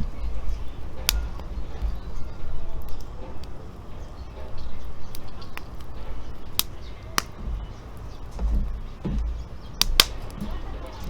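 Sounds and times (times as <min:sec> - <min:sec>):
wood fire crackling: 0:00.0 - 0:11.0
low rumble: 0:07.3 - 0:11.0.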